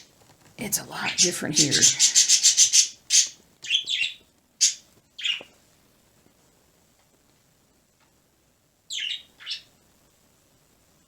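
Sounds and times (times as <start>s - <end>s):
pet bird chirping: 1.0s - 5.6s, 8.9s - 9.7s.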